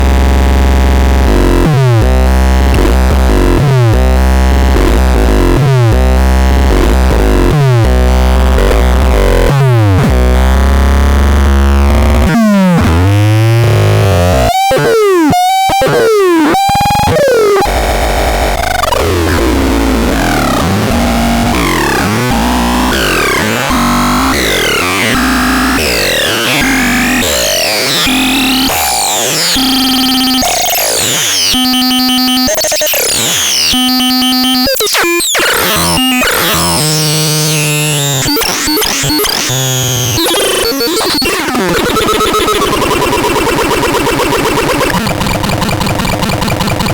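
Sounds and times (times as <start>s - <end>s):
synthesizer tones sweeping: 18.3s - 46.9s.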